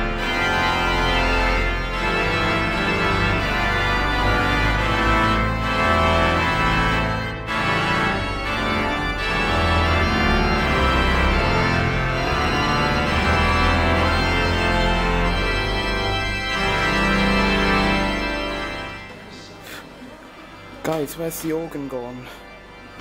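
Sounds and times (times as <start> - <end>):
organ music: 0.0 - 23.0.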